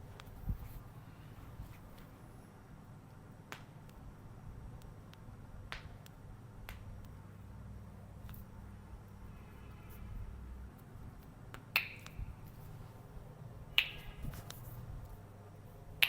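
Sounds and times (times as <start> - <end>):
snaps and cracks from massage: 3.4 - 4.0, 4.8 - 7.1, 10.8 - 12.6, 13.8 - 14.8.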